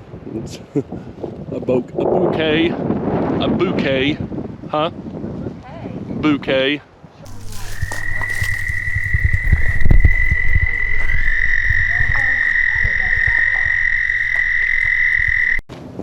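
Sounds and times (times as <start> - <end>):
wind rumble on microphone: 0.0 - 16.0
frog trilling: 7.3 - 15.6.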